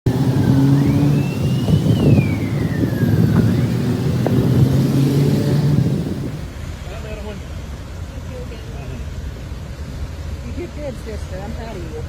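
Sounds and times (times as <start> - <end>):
vehicle engine humming: 0.0 - 10.7
low rumbling noise: 0.1 - 8.1.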